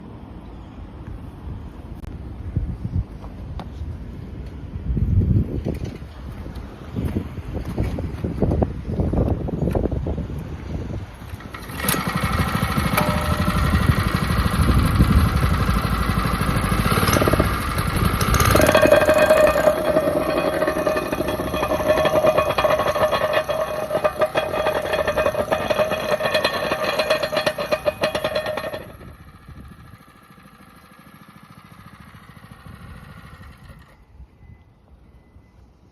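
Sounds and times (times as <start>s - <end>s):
plate compactor engine running: 11.2s - 34.0s.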